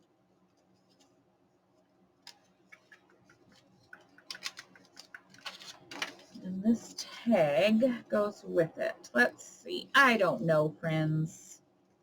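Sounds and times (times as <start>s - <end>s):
paper and card handled: 2.2s - 6.4s.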